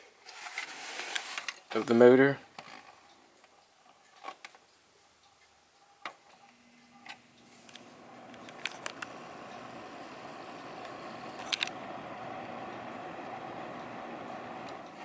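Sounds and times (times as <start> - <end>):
heater clicks: 7.0 - 15.0
fan motor humming: 7.2 - 15.0.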